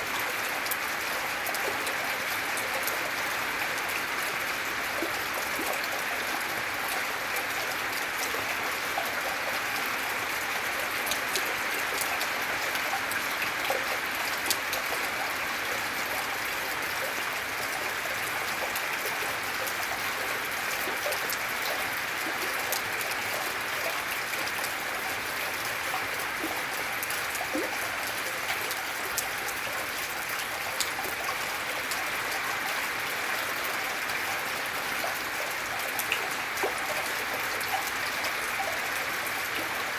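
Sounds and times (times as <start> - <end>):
raindrops ticking: 9.9 - 32.8.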